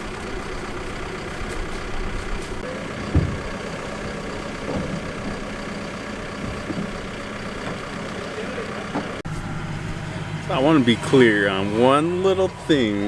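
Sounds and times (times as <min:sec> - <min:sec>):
engine idling: 0:00.0 - 0:13.0
light knocks: 0:03.0 - 0:05.4
short thump: 0:03.0 - 0:05.4.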